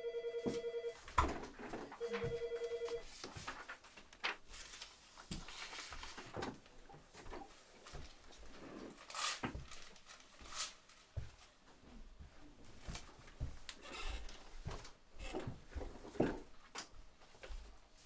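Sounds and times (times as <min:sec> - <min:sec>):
telephone ringing trill: 0:00.0 - 0:01.0, 0:02.0 - 0:03.0.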